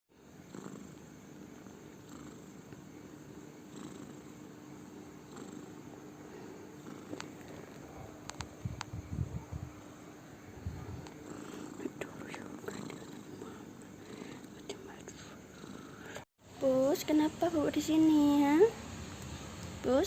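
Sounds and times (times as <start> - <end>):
cat snoring: 0.4 - 2.7, 3.6 - 7.2, 10.6 - 16.3
small click: 8.3 - 8.9.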